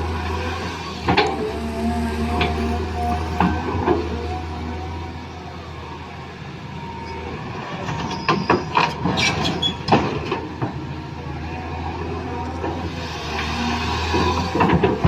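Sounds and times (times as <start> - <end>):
toy excavator motor humming: 2.5 - 5.3.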